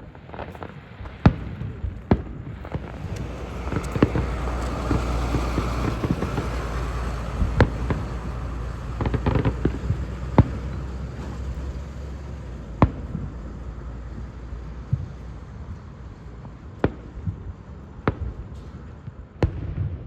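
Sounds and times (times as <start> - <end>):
fireworks bangs: 0.1 - 20.0
fireworks cracks: 0.2 - 19.9
low rumble: 2.7 - 16.2.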